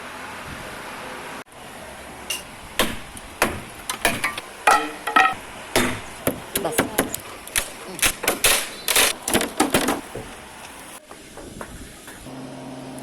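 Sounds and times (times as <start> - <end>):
metallic knocks and clanks: 2.3 - 10.4
wind noise on microphone: 11.2 - 12.3.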